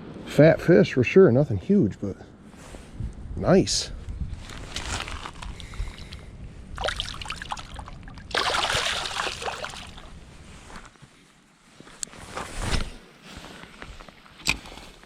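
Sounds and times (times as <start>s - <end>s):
loud water splash: 6.8s - 10.2s
river water splashing: 6.8s - 10.3s.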